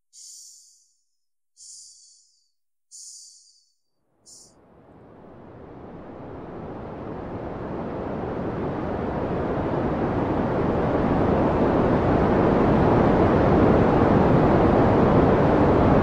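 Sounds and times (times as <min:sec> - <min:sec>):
steady rushing noise: 0:04.3 - 0:16.0.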